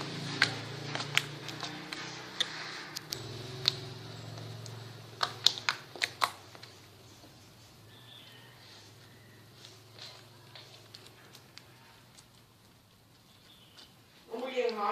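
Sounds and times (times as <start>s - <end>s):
slime popping and clicking: 0.4s - 6.7s.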